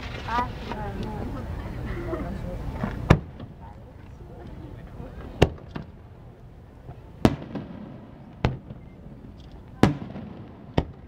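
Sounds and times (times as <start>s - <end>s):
fireworks bursting with bangs: 3.0s - 3.6s, 5.4s - 6.2s, 6.8s - 11.0s.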